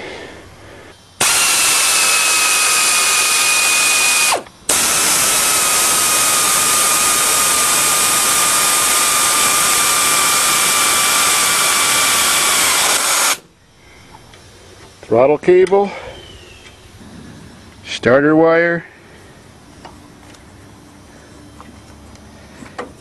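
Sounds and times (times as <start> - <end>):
pneumatic air tool whining: 1.2 - 13.5.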